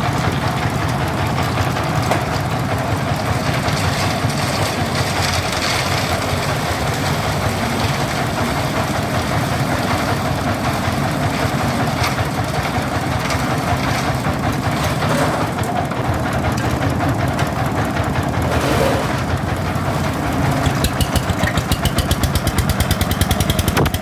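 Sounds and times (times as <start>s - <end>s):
machinery engine running: 0.0s - 24.0s
mechanical clatter: 18.0s - 24.0s.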